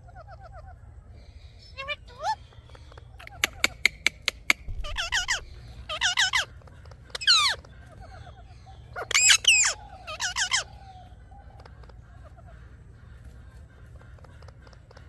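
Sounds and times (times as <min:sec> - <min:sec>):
parakeets chattering calls: 0:00.0 - 0:15.0
sharp clicks: 0:03.2 - 0:05.5.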